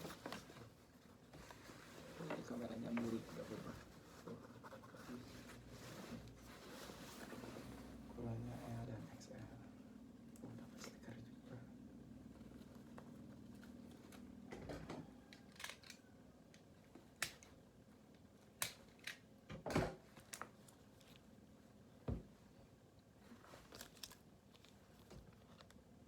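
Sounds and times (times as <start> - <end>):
packaging rustles: 23.2 - 25.9.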